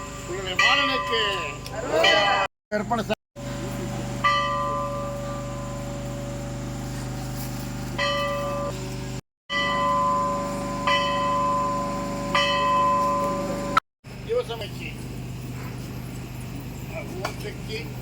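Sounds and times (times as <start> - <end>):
metal temple bell ringing: 0.3 - 2.5, 4.2 - 6.4, 8.0 - 8.8, 9.5 - 13.8
steady low hum: 2.7 - 18.0.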